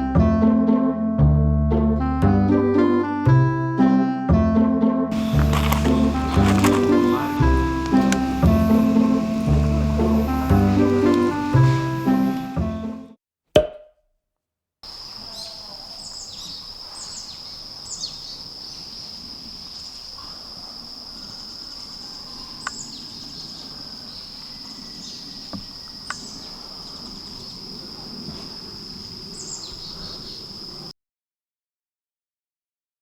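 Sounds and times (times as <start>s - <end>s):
insect trilling: 5.1s - 12.6s.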